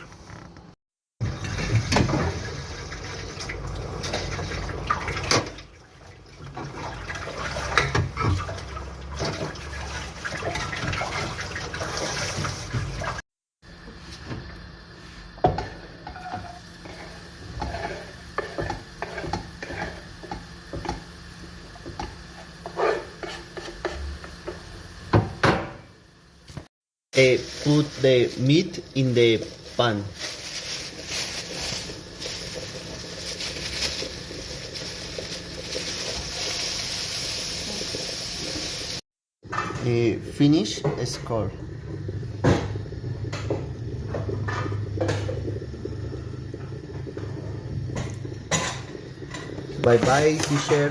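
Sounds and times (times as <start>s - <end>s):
water running into sink: 1.2s - 13.2s, 27.2s - 50.9s.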